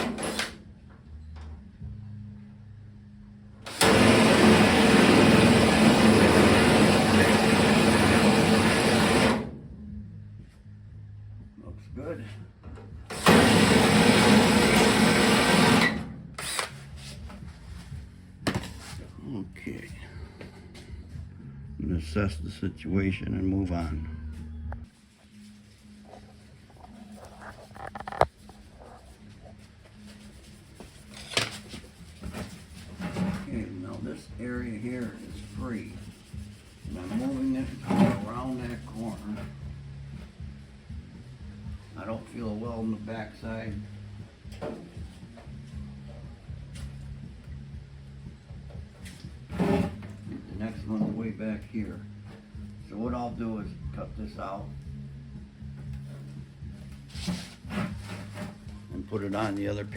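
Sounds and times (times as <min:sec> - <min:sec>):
handheld power tool running: 0:03.7 - 0:09.5, 0:13.1 - 0:16.7.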